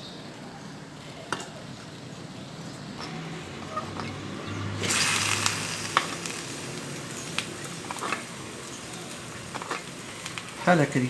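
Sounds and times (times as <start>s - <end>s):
meat juices sizzling: 3.0s - 11.0s.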